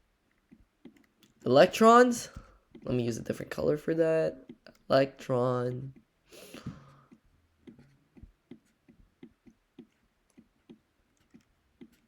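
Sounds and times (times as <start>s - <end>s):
pen writing taps and strokes: 0.1s - 1.4s, 2.3s - 2.9s, 5.9s - 12.0s.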